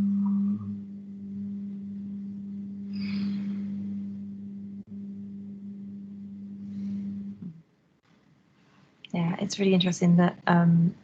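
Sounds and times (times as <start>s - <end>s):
steady low hum: 0.0s - 7.9s.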